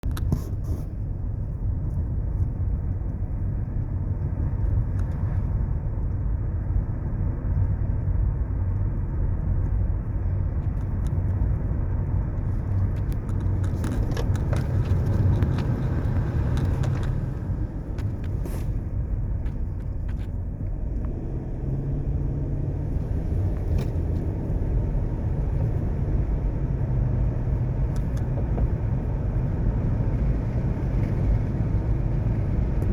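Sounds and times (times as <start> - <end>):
car engine and tyre rumble: 0.0 - 32.9
scattered ticks and crackles: 9.5 - 18.5.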